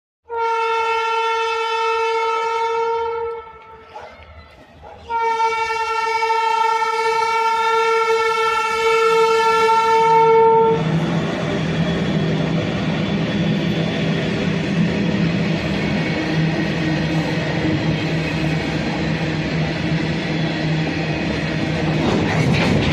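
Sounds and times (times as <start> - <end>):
locomotive air horn blasts: 0.2 - 3.9, 5.0 - 10.9
freight train rumbling: 0.3 - 22.9.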